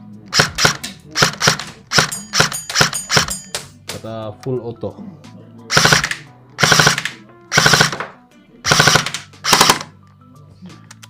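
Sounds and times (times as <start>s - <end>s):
airsoft gun firing bursts: 0.3s - 3.4s, 5.7s - 9.9s.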